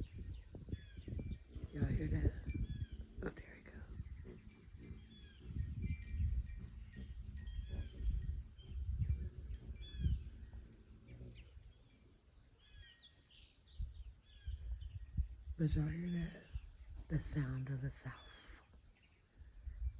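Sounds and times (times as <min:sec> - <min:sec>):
low microphone rumble: 0:00.0 - 0:11.9
songbirds chirping: 0:00.0 - 0:19.9.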